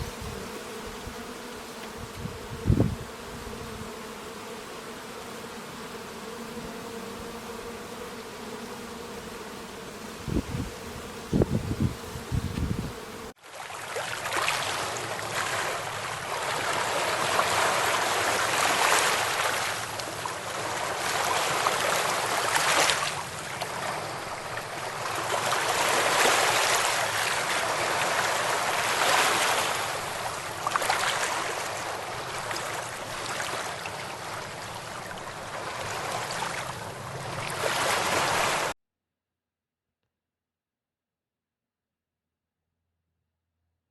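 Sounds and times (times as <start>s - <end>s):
insect buzzing: 0.0s - 13.4s, 14.5s - 38.8s
rushing water like surf: 13.4s - 38.8s.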